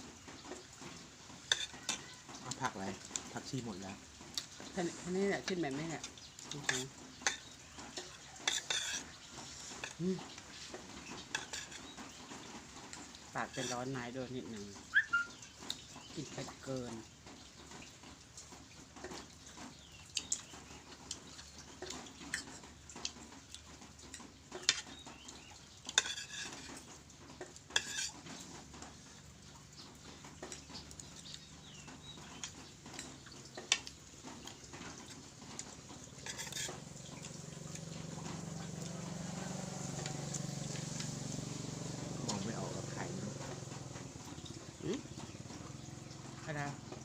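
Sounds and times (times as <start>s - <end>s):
cutlery clinking against dishes: 1.4s - 2.2s, 6.6s - 9.1s, 11.2s - 12.0s, 25.9s - 28.4s, 36.1s - 37.3s.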